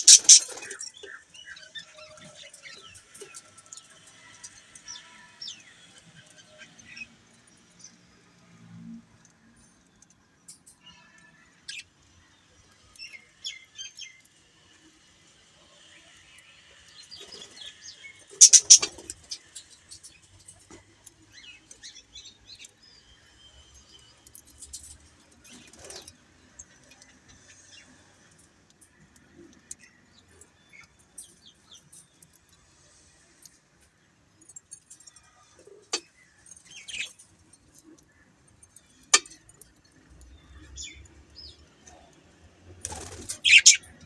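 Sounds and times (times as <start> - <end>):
sharp clicks: 0.0 - 0.5, 18.4 - 18.9
budgerigars chirping: 0.0 - 0.6, 18.4 - 19.1, 43.4 - 43.9.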